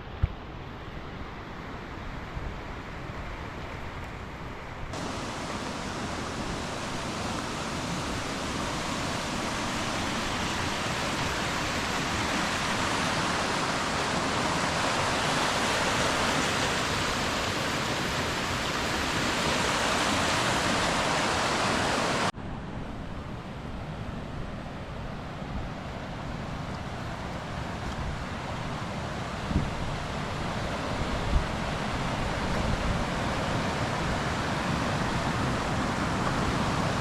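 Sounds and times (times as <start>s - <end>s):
river rapids rushing: 4.9s - 22.3s, 26.3s - 37.0s.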